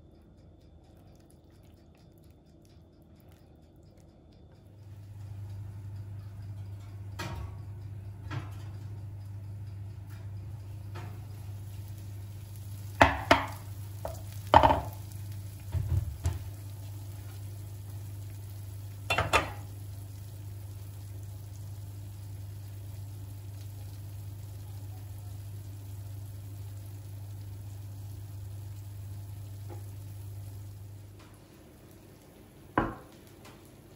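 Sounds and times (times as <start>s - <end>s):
steady low hum: 0.0s - 33.9s
cookware clinking and knocking: 13.0s - 15.0s, 19.1s - 19.7s.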